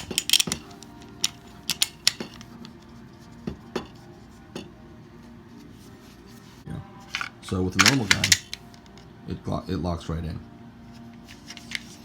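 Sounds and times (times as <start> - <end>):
pistol clicking into holster: 0.0 - 2.4, 7.2 - 8.9.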